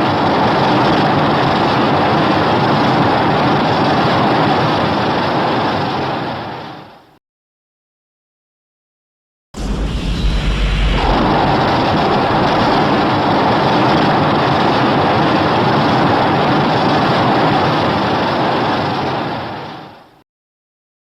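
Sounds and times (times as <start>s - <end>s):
sci-fi energy beam hiss: 9.6s - 13.3s
deep low rumble: 9.6s - 14.3s.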